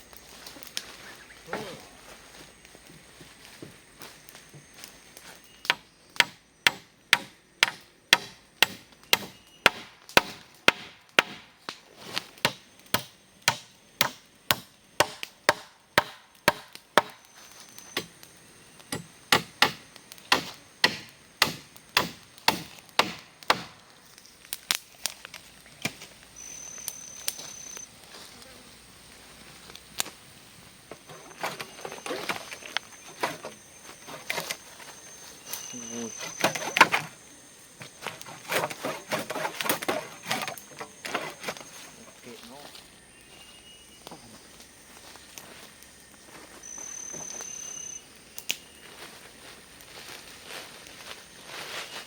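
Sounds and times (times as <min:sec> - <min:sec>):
blade chopping wood: 0:05.7 - 0:11.5, 0:12.1 - 0:17.2, 0:18.9 - 0:23.8, 0:30.9 - 0:34.6, 0:36.2 - 0:37.1, 0:37.8 - 0:41.7.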